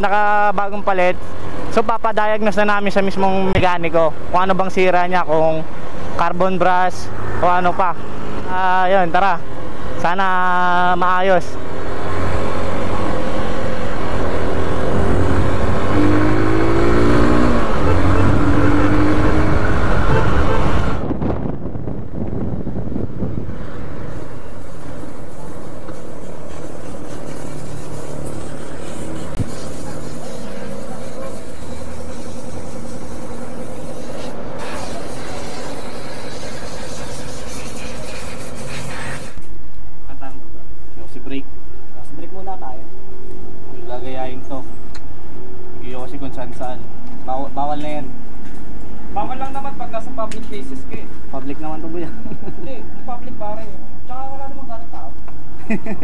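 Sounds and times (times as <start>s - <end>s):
wind and road noise: 0.0s - 56.0s
wind on microphone: 16.6s - 24.7s
motorcycle engine running: 24.4s - 38.5s.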